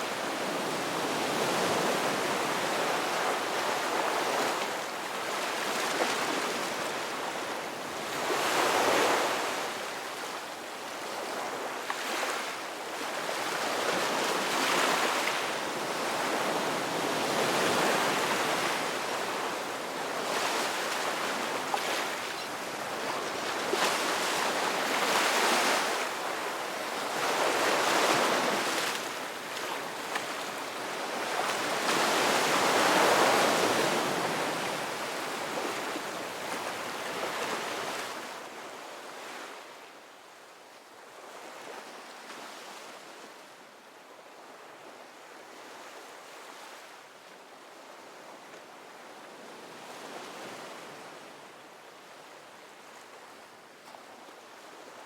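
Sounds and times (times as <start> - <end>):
ocean waves breaking on shore: 0.0 - 39.8.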